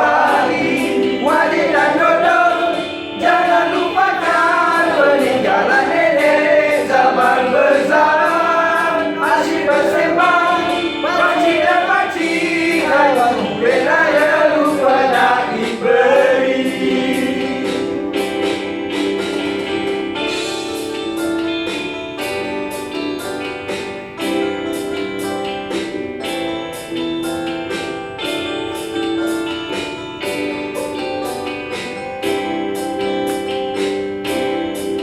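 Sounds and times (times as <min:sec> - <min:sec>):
group of voices singing: 0:00.0 - 0:18.1.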